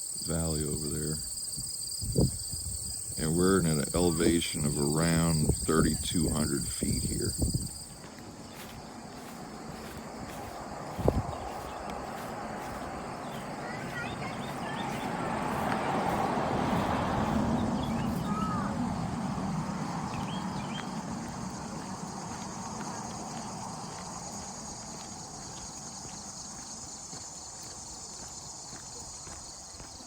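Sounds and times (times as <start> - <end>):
insects chirping: 0.0 - 30.0
bird chirps: 17.6 - 18.6, 20.1 - 21.0.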